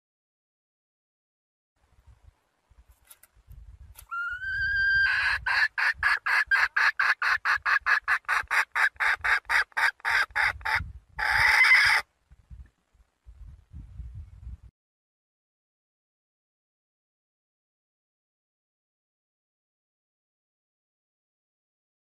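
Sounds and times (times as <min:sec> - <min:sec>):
hen calling and clucking: 0:04.0 - 0:12.1.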